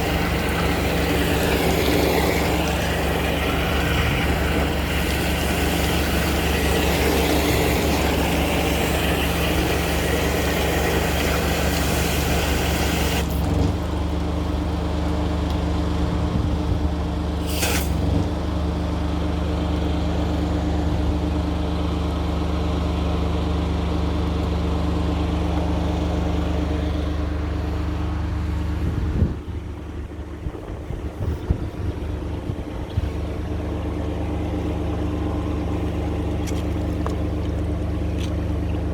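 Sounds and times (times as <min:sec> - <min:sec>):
water hissing through hose: 0:00.0 - 0:13.6, 0:17.4 - 0:18.0
drain jetting machine running: 0:00.0 - 0:38.9
short sharp hiss: 0:17.4 - 0:18.0.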